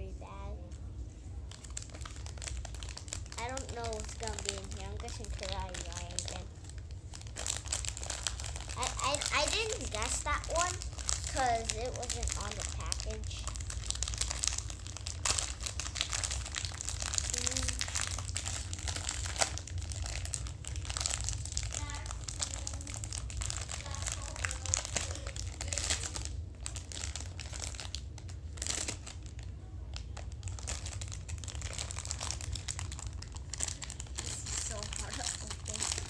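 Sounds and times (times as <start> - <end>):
plastic packaging crinkling: 1.5 - 36.0.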